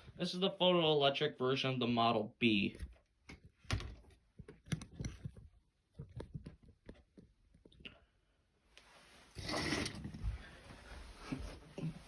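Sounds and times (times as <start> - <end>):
small plastic clicks and knocks: 2.8 - 7.8.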